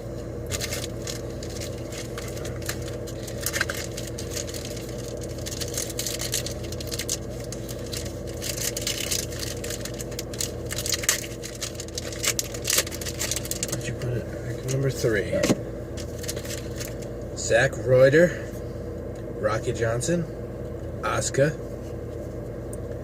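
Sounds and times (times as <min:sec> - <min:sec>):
steady low hum: 0:00.0 - 0:23.0
card wrapper crinkling: 0:00.4 - 0:15.4, 0:16.0 - 0:17.1.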